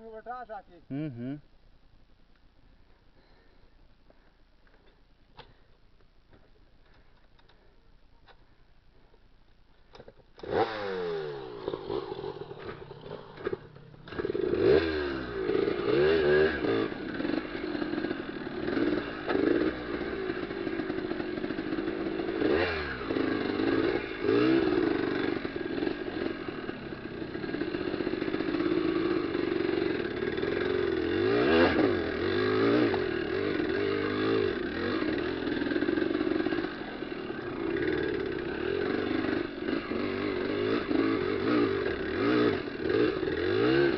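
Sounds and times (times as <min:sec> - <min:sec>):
motorcycle engine revving: 0:10.0 - 0:43.9.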